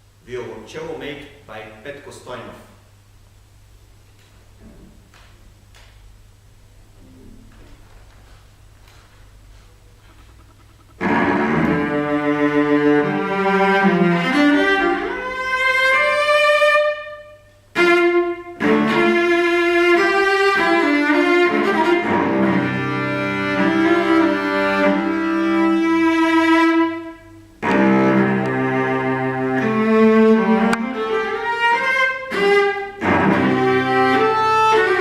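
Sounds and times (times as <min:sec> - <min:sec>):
solo cello bowed: 0:10.9 - 0:35.0.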